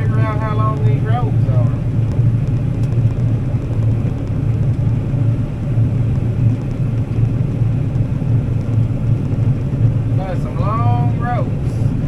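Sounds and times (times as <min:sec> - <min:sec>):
combine harvester drone: 0:00.0 - 0:12.0.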